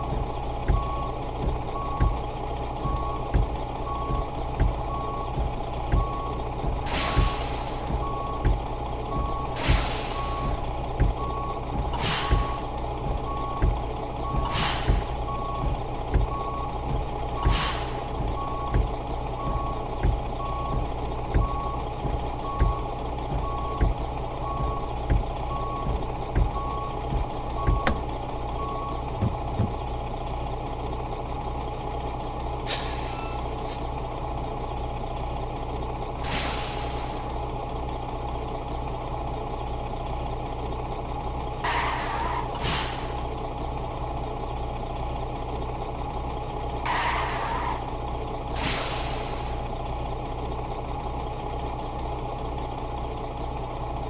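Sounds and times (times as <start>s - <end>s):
truck reversing alarm beeping: 0.0s - 29.9s, 32.7s - 33.8s, 36.3s - 37.4s, 41.2s - 44.1s, 46.2s - 49.8s
diesel engine running: 0.0s - 54.0s
hissing air bursts: 9.6s - 10.6s, 12.0s - 12.6s, 14.4s - 15.2s, 17.4s - 18.1s, 48.6s - 49.6s.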